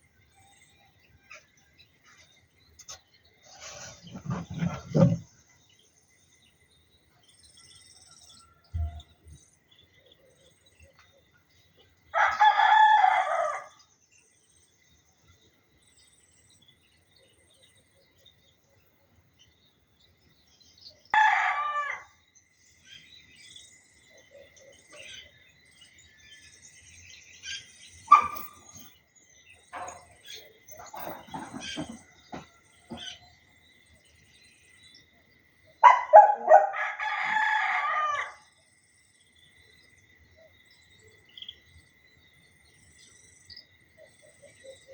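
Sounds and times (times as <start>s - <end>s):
rooster crowing: 12.2s - 13.8s, 21.2s - 22.2s, 36.1s - 38.5s
small birds chirping: 21.9s - 36.8s.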